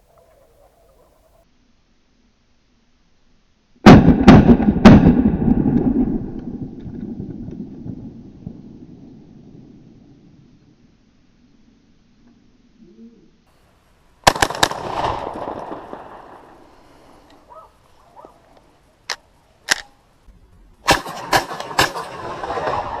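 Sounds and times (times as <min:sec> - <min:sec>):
shotgun shots with echo: 0:03.9 - 0:05.8, 0:14.2 - 0:16.4, 0:20.8 - 0:23.0
sharp cracks: 0:03.9 - 0:08.3, 0:14.2 - 0:23.0.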